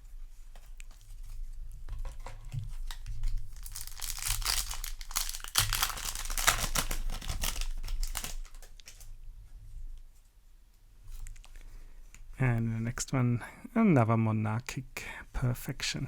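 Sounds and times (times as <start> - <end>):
foil wrapper crinkling and tearing: 2.2 - 9.1.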